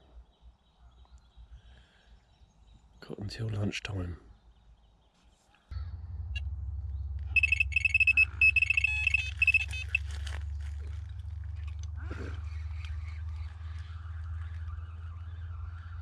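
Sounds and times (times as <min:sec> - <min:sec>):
low wind rumble: 0:05.7 - 0:16.0
bite alarm rapid high beeps: 0:07.3 - 0:10.1.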